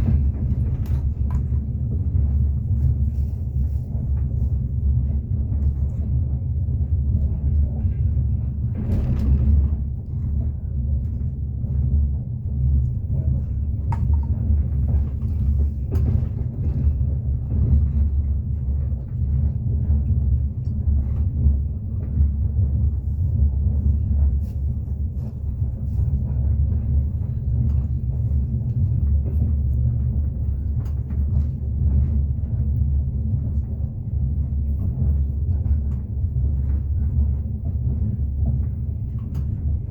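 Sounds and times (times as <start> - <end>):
train wheels rumbling on rails: 0.0 - 39.9
knocks: 13.9 - 14.4.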